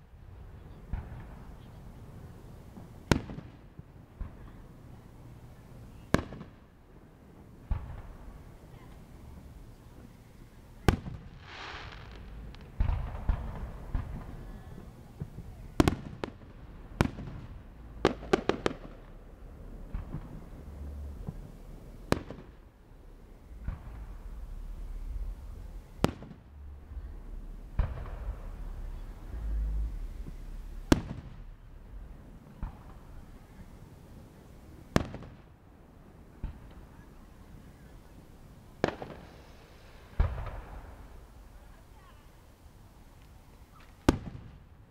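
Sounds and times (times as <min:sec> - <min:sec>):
fireworks bursting: 0:00.5 - 0:44.9
firework hiss: 0:07.8 - 0:16.3, 0:38.8 - 0:41.6.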